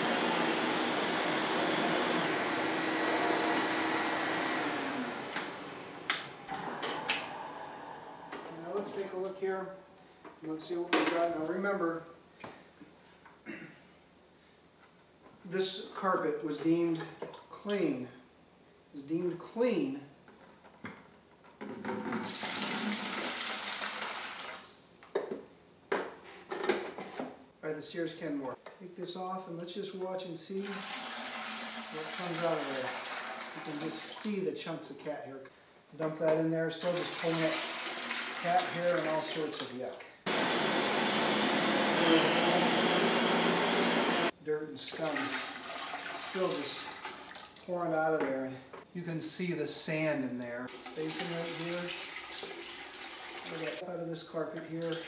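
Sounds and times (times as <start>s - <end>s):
vacuum cleaner whining: 0.0s - 9.3s, 30.6s - 33.9s, 37.1s - 39.4s, 40.3s - 44.4s
water pouring and splashing: 30.6s - 34.3s, 36.8s - 40.0s, 45.0s - 47.8s, 50.7s - 53.8s, 54.7s - 55.0s.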